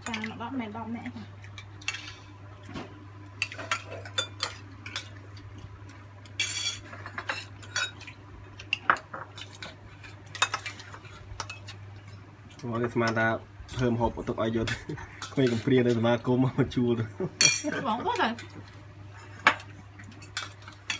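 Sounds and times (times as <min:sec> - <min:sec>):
utensils clinking on dishes: 0:03.4 - 0:05.4, 0:06.2 - 0:13.8, 0:14.6 - 0:16.3, 0:17.4 - 0:18.5, 0:19.2 - 0:20.9.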